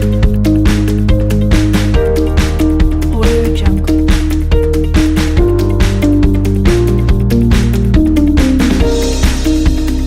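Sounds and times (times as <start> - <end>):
electronic music with heavy bass: 0.0 - 10.0.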